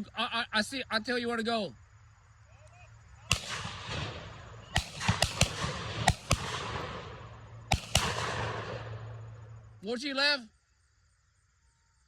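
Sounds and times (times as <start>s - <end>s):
shotgun shots with echo: 3.3s - 9.3s.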